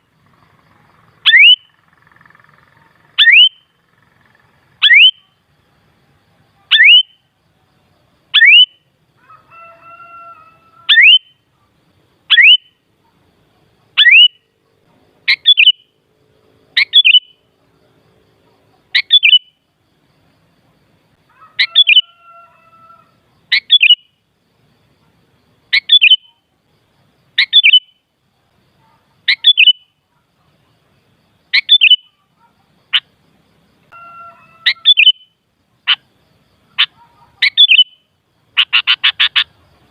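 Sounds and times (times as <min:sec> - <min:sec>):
bird whistled calls: 0:01.3 - 0:01.7, 0:03.2 - 0:03.7, 0:04.8 - 0:05.2, 0:08.4 - 0:08.8, 0:10.9 - 0:11.3, 0:12.3 - 0:12.7, 0:14.0 - 0:14.4, 0:15.3 - 0:15.8, 0:16.8 - 0:17.4, 0:19.0 - 0:19.5, 0:21.6 - 0:22.1, 0:23.5 - 0:24.0, 0:25.8 - 0:26.3, 0:27.4 - 0:27.9, 0:29.3 - 0:29.8, 0:31.6 - 0:32.2, 0:34.0 - 0:35.3, 0:36.8 - 0:38.0.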